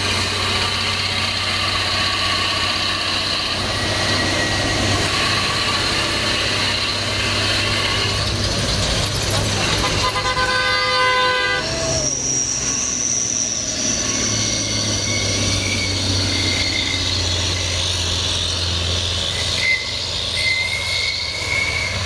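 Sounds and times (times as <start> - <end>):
diesel engine droning: 0.0 - 22.0
thin high whine: 10.0 - 22.0.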